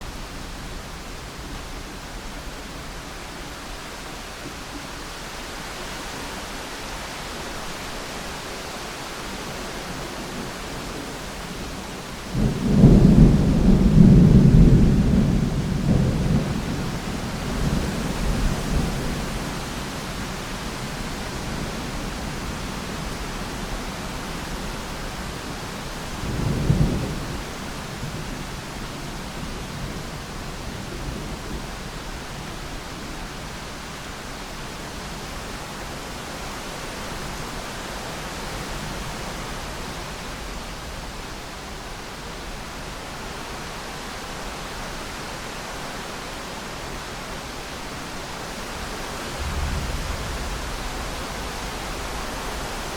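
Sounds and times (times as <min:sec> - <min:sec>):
rain hiss: 0:00.0 - 0:52.9
distant thunder rumbling: 0:11.7 - 0:19.4, 0:48.7 - 0:52.9.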